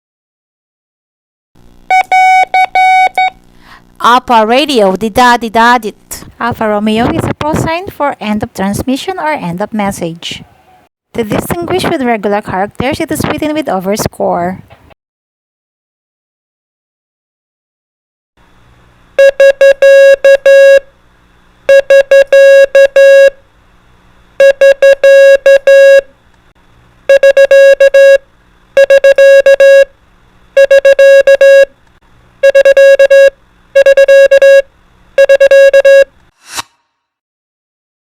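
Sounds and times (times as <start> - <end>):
morse code tone: 1.9 - 3.4, 19.2 - 20.8, 21.7 - 23.4, 24.4 - 26.1, 27.1 - 28.2, 28.8 - 29.9, 30.6 - 31.7, 32.4 - 36.1.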